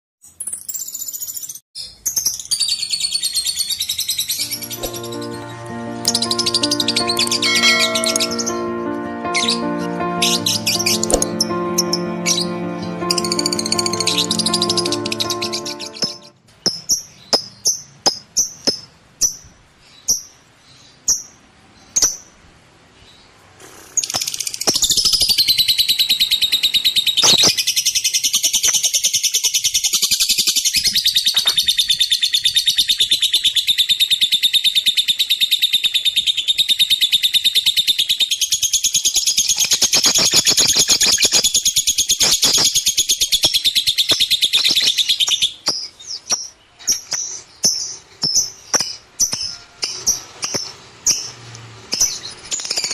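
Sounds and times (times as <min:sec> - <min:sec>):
lovebird chirping and chattering: 0:09.3 - 0:20.4, 0:23.9 - 0:52.9.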